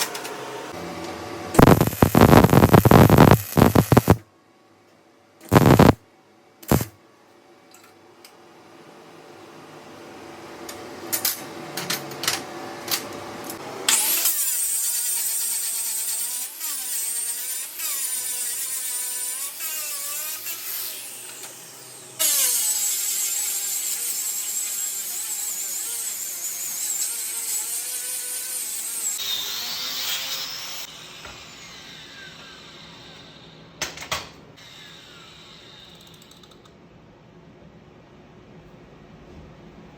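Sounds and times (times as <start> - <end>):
power grinder whining: 1.6 - 4.2, 5.5 - 6.0
sharp crackles and clicks: 1.6 - 4.2, 5.5 - 6.0, 6.6 - 6.9.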